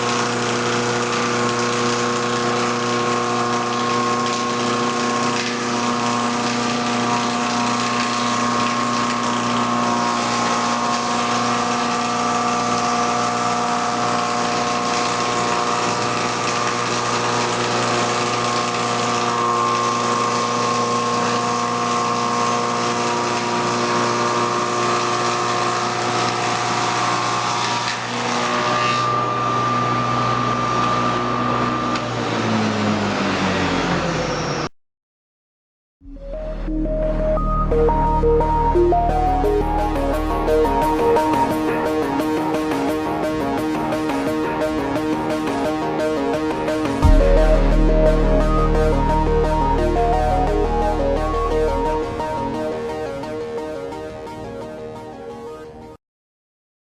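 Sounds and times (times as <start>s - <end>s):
motor hum with steady tones: 0.0s - 33.2s
cutter working wood: 0.0s - 34.2s.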